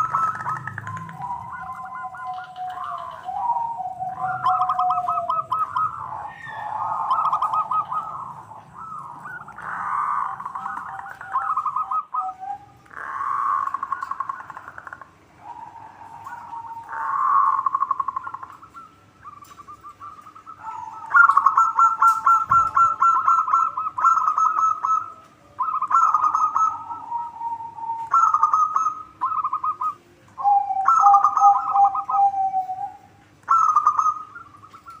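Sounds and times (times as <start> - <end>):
doves cooing in trilling phrases: 0.0 - 35.0.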